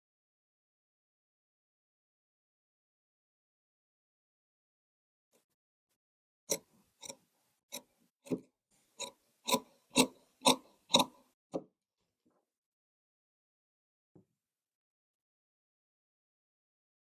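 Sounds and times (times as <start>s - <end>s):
sharp clicks of tailor's tools: 9.0s - 11.2s.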